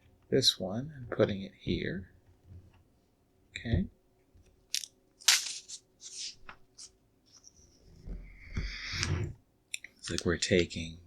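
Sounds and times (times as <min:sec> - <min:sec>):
plastic pieces rustling: 0:04.7 - 0:06.4.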